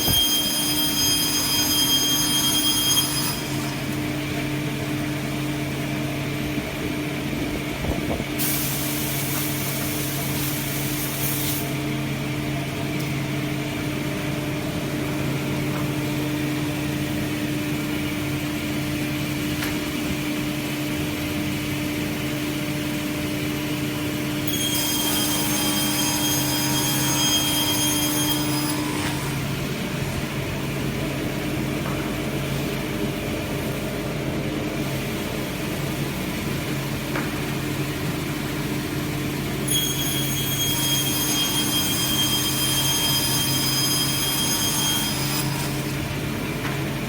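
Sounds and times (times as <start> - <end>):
hiss: 8.4 - 11.7.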